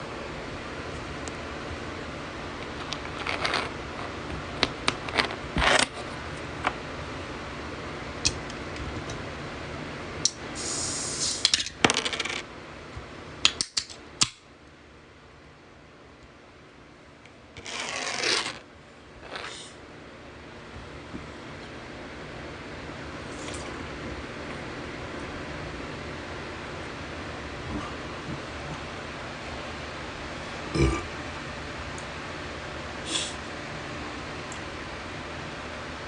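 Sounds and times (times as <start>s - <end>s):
can opening hiss: 10.6s - 11.6s.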